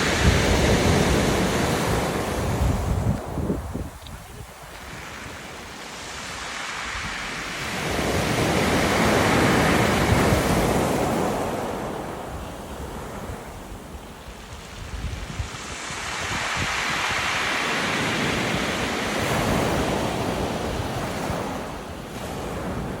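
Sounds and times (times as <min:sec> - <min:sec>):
wind buffeting microphone: 0:00.0 - 0:05.6, 0:06.8 - 0:23.0
waves washing over pebbles: 0:00.0 - 0:23.0.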